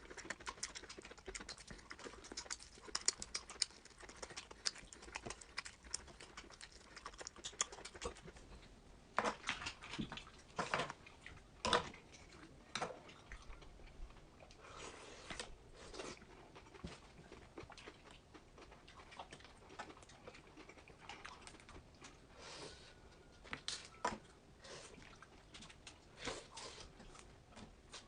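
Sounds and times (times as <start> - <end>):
wet chewing clicks: 0.0 - 8.6, 15.3 - 22.3.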